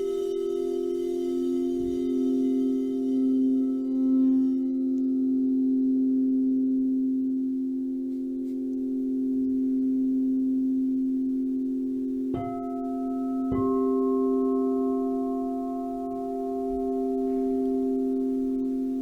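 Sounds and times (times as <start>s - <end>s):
singing bowls ringing: 0.0s - 19.0s
singing bowl struck: 12.3s - 19.0s.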